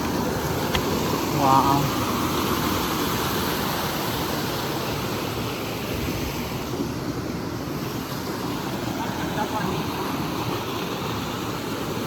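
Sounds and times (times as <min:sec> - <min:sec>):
waterfall rushing: 0:00.0 - 0:06.7, 0:07.6 - 0:12.0.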